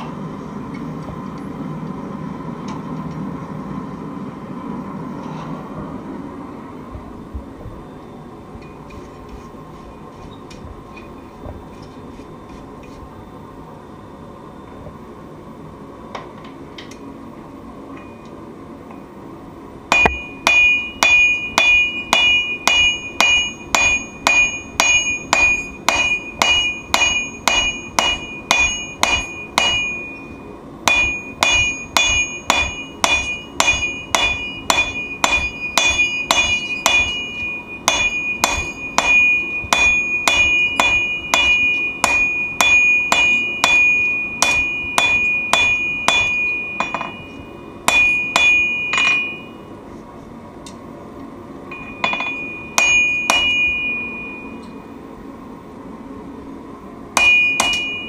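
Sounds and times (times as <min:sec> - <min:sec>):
hammer striking steel on anvil: 0:19.9 - 0:49.7, 0:51.7 - 0:54.8, 0:57.2 - 0:58.0.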